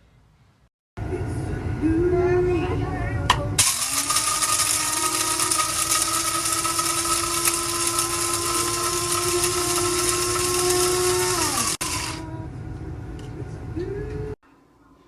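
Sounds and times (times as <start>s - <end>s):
coffee grinder motor whine: 3.6s - 12.2s.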